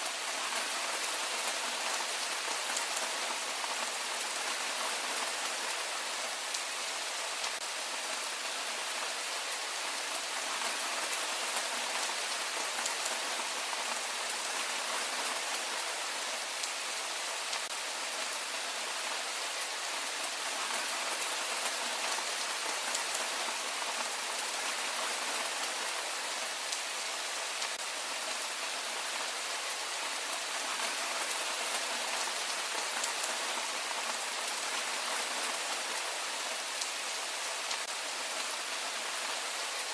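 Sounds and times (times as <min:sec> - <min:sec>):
heavy rain pattering: 0:00.0 - 0:39.9.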